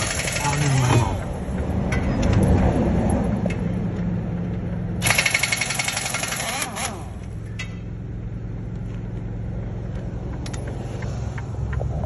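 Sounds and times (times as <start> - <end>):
truck engine idling: 0.0 - 1.9.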